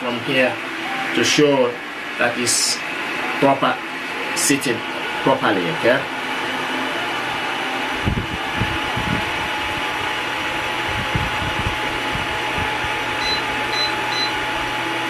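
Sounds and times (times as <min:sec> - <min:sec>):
faint motor hum: 0:00.0 - 0:15.0
fan air rushing: 0:00.0 - 0:15.0
short high beeps: 0:13.2 - 0:14.4.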